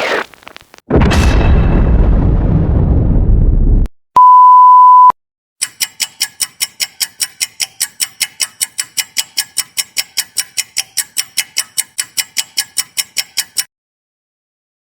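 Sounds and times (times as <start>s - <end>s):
ticking clicks: 5.6s - 13.7s.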